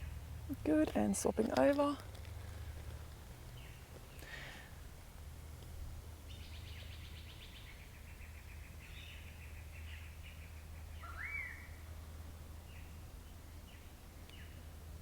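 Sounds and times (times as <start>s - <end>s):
low outdoor rumble: 0.0s - 15.0s
bird whistle sweeping up: 11.0s - 11.7s.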